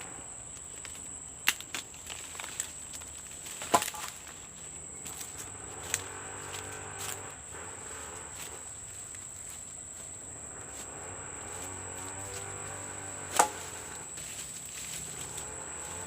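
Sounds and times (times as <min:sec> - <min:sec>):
insects trilling: 0:00.0 - 0:16.0
sharp knocks: 0:13.2 - 0:14.0.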